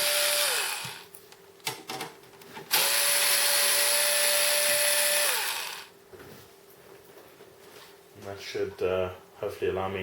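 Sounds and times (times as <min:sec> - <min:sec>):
power screwdriver motor whining: 0:00.0 - 0:01.0, 0:02.7 - 0:05.9.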